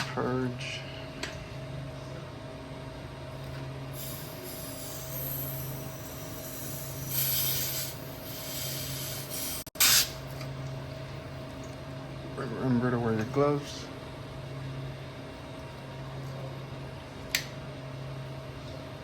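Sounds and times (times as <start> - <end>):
steady low hum: 0.0 - 19.0
refrigerant hissing from hose: 4.0 - 10.2.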